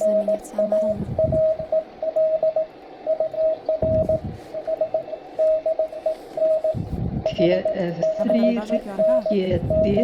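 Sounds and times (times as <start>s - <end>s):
radio band noise hiss: 0.0s - 1.7s, 3.8s - 10.0s
morse code tone: 0.0s - 10.0s.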